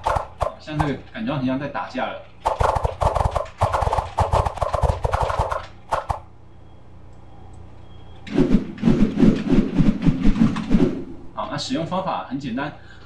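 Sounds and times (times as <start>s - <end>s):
rapid keyboard typing: 0.0s - 1.0s, 2.4s - 6.2s.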